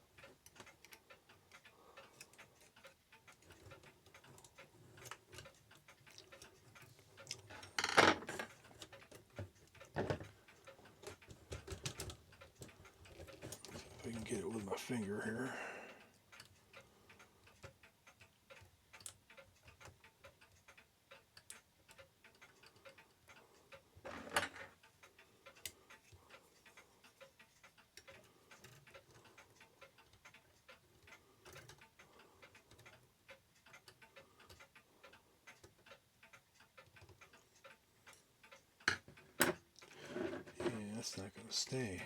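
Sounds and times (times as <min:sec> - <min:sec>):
clock movement ticking: 0:00.0 - 0:42.0.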